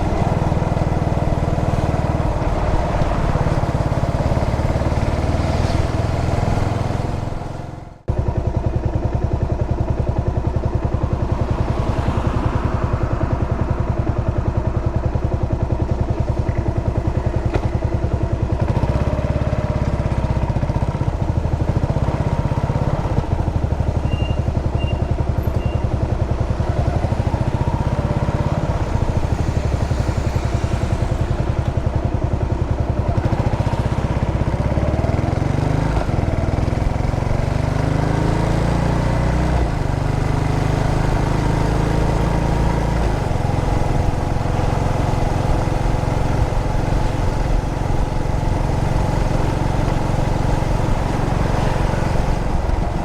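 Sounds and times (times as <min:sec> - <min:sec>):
single-cylinder engine running: 0:00.0 - 0:53.0.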